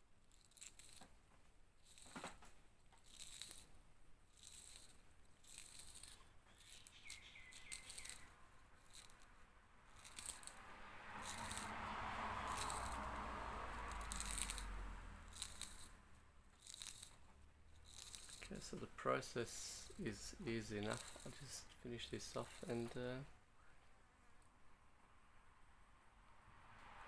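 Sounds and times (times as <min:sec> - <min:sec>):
rasping noise: 0:03.0 - 0:23.3
hand-work clicks and snips: 0:04.3 - 0:09.3, 0:09.9 - 0:10.6, 0:12.4 - 0:16.0, 0:16.6 - 0:18.8.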